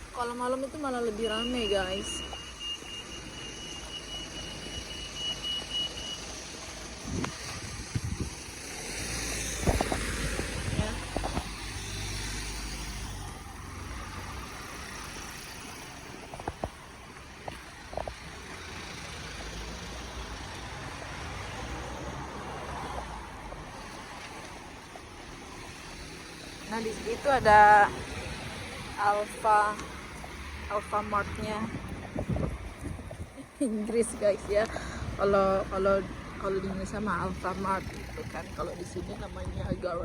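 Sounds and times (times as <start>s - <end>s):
low vehicle rumble: 0.0s - 40.0s
car driving past: 4.0s - 16.9s, 17.6s - 33.2s.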